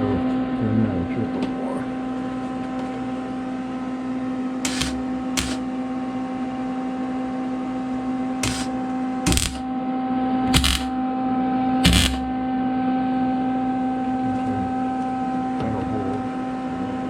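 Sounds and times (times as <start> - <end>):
steady shop hum: 0.0 - 12.7, 13.3 - 17.0
short noisy equipment bursts: 4.6 - 5.6, 8.4 - 8.7, 9.3 - 9.6, 10.5 - 10.9, 11.8 - 12.4.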